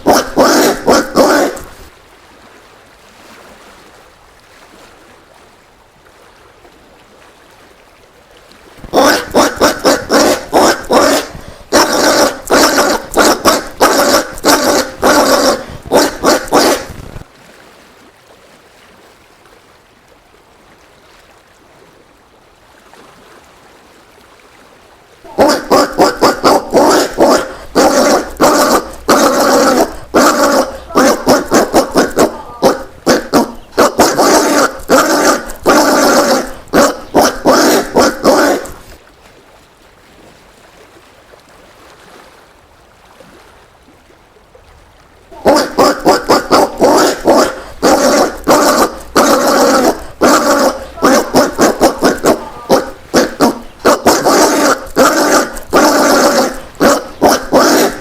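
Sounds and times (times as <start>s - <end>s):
peccary grunting barks: 0.0s - 1.9s, 8.8s - 17.2s, 25.3s - 39.0s, 45.3s - 58.0s.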